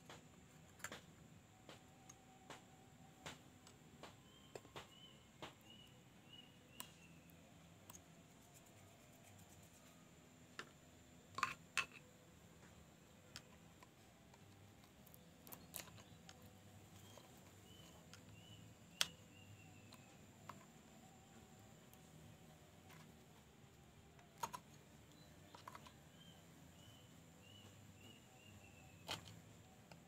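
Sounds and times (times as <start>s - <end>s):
sharp clicks and taps: 0.0s - 6.0s, 6.7s - 8.2s.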